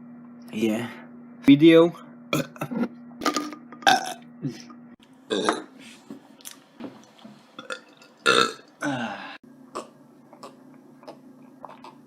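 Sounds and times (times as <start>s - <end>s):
man burping loudly: 2.3s - 4.2s, 5.3s - 5.7s, 7.6s - 9.2s.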